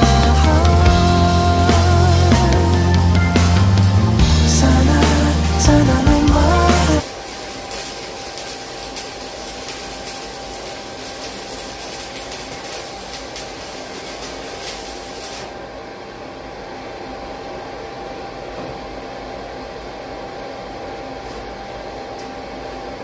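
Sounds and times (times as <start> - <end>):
song playing: 0.0 - 7.0.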